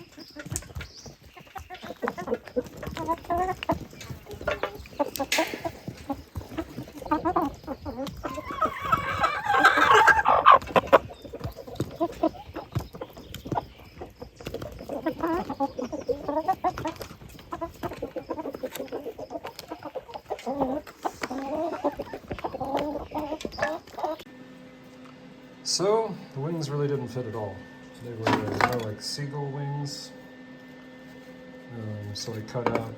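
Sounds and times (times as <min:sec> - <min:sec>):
hens clucking: 0:00.0 - 0:32.9.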